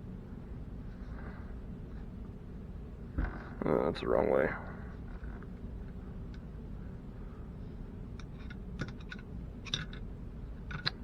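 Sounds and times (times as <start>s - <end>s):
low steady hum: 0.0s - 11.0s
small metal parts clicking: 8.2s - 10.0s, 10.7s - 11.0s.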